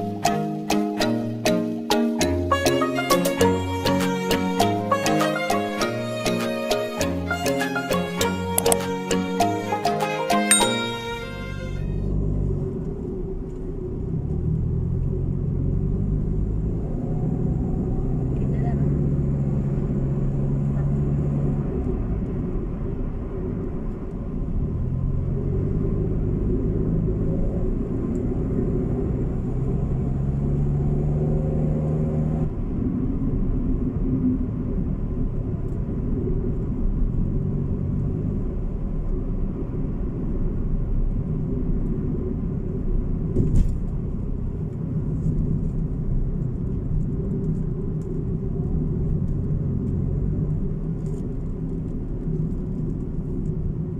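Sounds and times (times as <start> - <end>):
brief click: 8.6 - 8.9
road rumble: 11.1 - 53.9.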